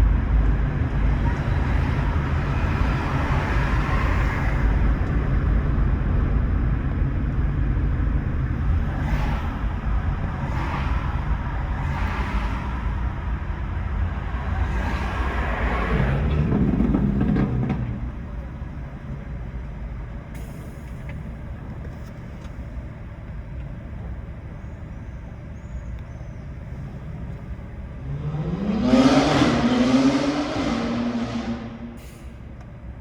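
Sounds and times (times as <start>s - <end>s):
vehicle engine accelerating: 0.0s - 20.2s, 26.0s - 32.0s
car road rumble: 0.0s - 33.0s.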